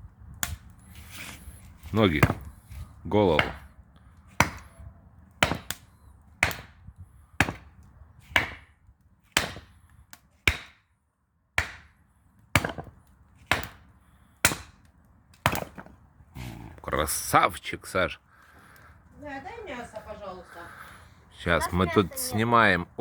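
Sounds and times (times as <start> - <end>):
axe chopping firewood: 0.4 - 4.8, 5.4 - 16.0.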